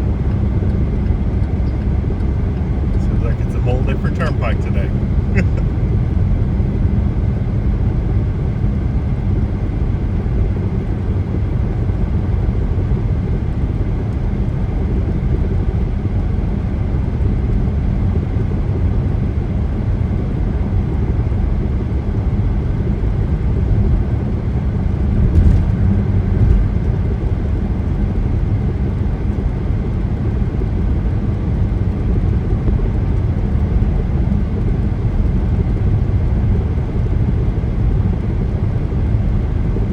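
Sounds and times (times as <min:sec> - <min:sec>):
car road and tyre rumble: 0:22.8 - 0:29.0.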